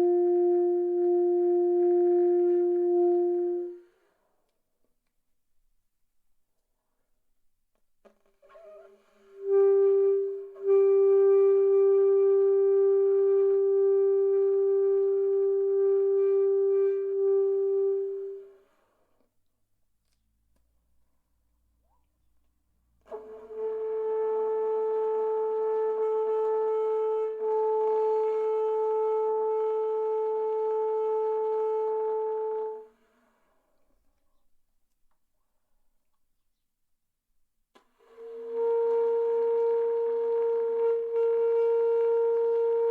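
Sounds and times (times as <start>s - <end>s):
saxophone playing: 0.0s - 3.9s, 8.4s - 18.5s, 23.1s - 33.0s, 38.0s - 42.9s.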